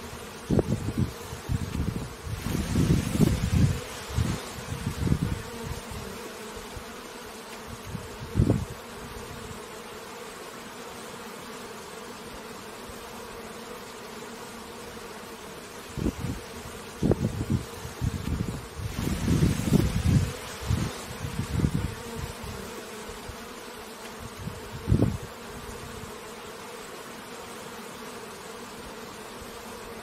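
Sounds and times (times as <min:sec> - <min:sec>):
bees buzzing: 0:00.0 - 0:30.0
low gusts: 0:00.1 - 0:06.1, 0:15.8 - 0:22.7.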